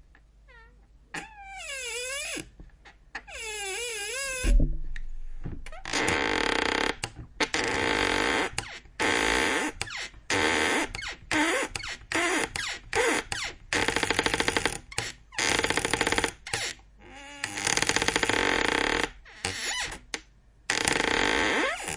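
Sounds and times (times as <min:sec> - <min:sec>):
squeaky door hinges creaking: 0:00.5 - 0:04.6, 0:05.6 - 0:20.1.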